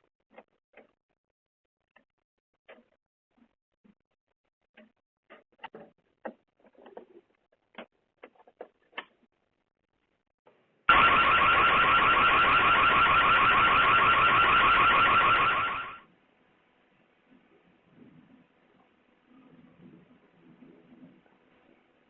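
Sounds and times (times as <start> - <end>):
warbling electronic alarm siren: 10.9 - 16.0.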